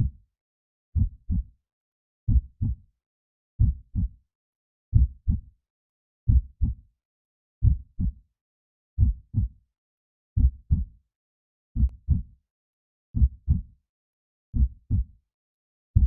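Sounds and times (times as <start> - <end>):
heartbeat thumps: 9.0 - 9.5, 13.2 - 13.6.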